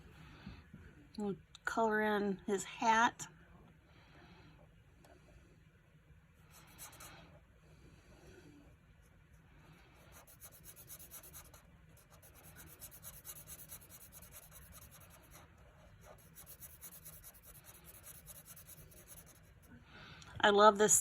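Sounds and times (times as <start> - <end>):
marker scratching on card: 6.5 - 7.2, 10.0 - 19.7.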